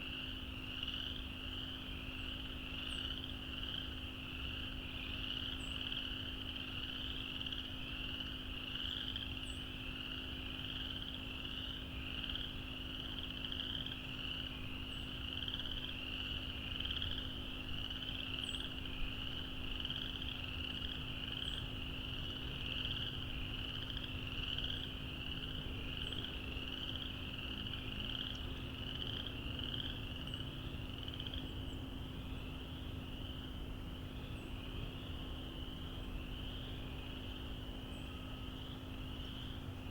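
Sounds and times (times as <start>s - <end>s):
chorus of frogs calling: 0.0s - 31.8s.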